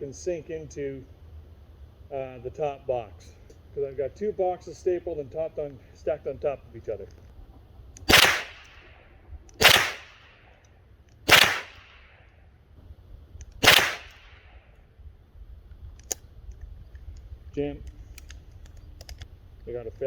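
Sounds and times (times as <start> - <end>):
rifle shots with echo: 8.1 - 9.0, 9.6 - 10.4, 11.3 - 12.2, 13.6 - 14.5
faint click: 15.7 - 19.3.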